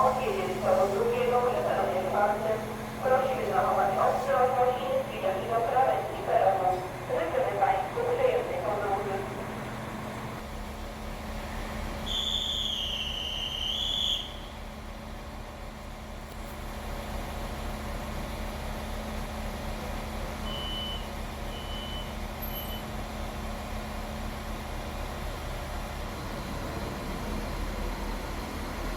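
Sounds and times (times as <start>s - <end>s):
train humming at platform: 0.0s - 28.9s
high wavering whistle: 12.0s - 14.5s.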